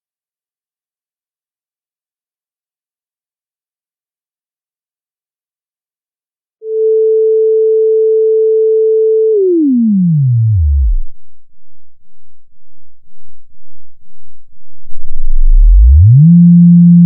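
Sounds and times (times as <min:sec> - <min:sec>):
sine wave test tone: 0:06.6 - 0:17.0.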